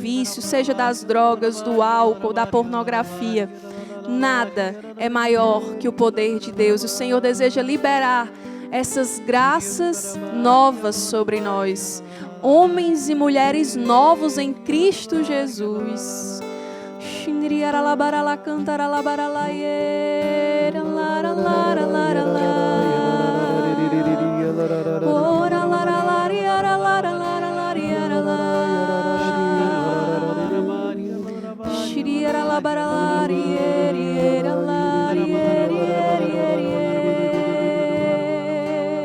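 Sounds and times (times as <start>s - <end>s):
voices singing and humming: 20.5s - 39.0s.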